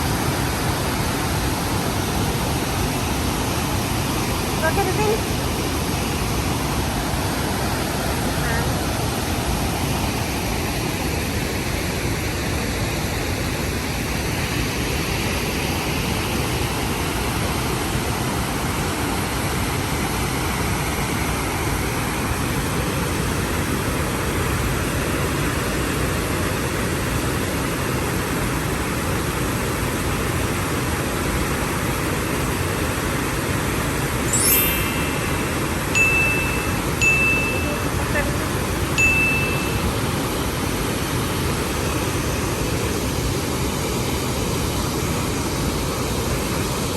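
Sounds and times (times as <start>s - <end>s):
waterfall rushing: 0.0s - 25.4s, 26.8s - 46.9s.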